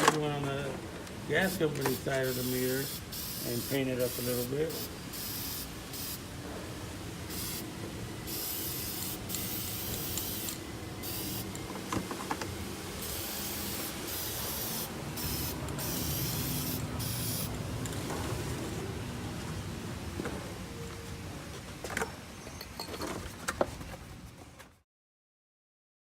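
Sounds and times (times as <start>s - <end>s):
aerosol can spraying: 1.5s - 6.2s, 7.3s - 7.6s, 8.3s - 11.6s, 13.0s - 17.5s.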